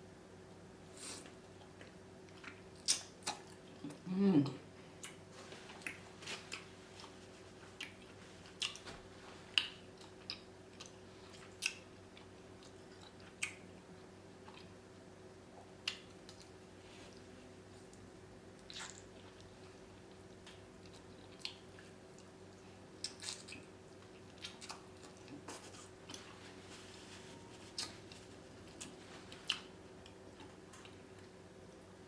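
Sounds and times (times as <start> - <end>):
person chewing: 1.0 - 4.0, 5.0 - 8.8, 9.5 - 13.6, 14.4 - 14.8, 18.6 - 31.4.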